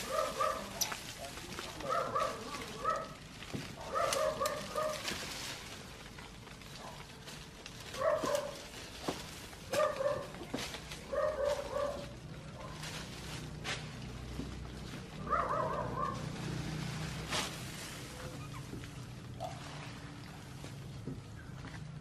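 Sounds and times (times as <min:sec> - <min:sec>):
animal yelping: 0:18.1 - 0:18.8.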